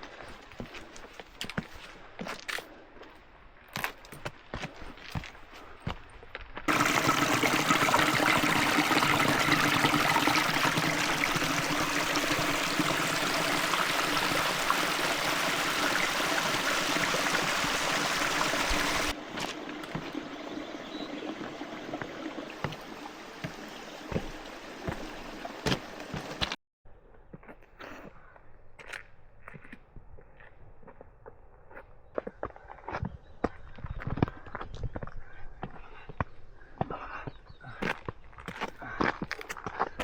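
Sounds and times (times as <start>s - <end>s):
outdoor hiss: 6.7s - 26.5s
mountain stream rushing: 6.7s - 26.6s.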